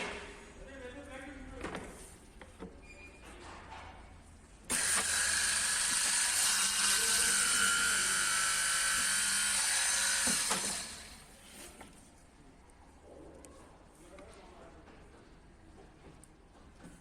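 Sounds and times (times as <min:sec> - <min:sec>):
woodworking machine whining: 0:04.7 - 0:11.3.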